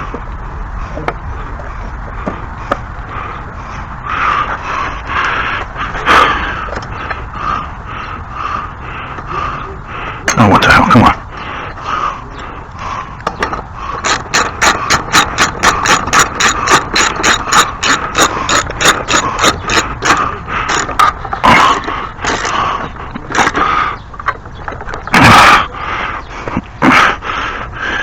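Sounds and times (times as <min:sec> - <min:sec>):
ratchet wrench clicking: 0:13.9 - 0:21.1.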